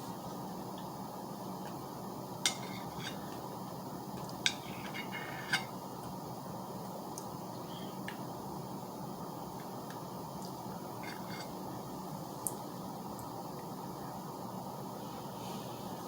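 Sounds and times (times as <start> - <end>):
low background hum: 0.0 - 16.0
cutlery clinking against a dish: 2.4 - 3.3, 4.4 - 5.8.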